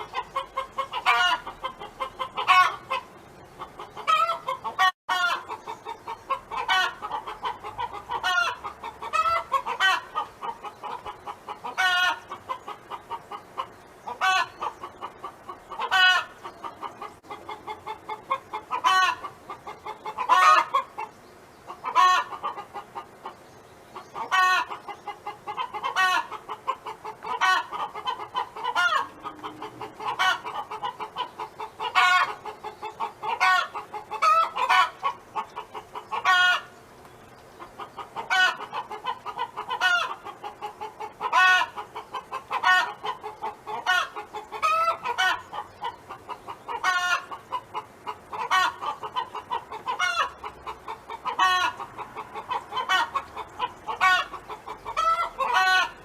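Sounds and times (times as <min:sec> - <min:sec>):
hen cackling: 0:00.0 - 0:36.8, 0:37.6 - 0:56.0.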